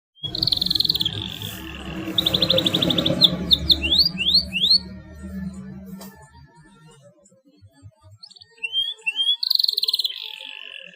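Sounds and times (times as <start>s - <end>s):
canary singing: 0.2s - 5.9s, 8.1s - 10.9s
steady low hum: 0.2s - 7.1s.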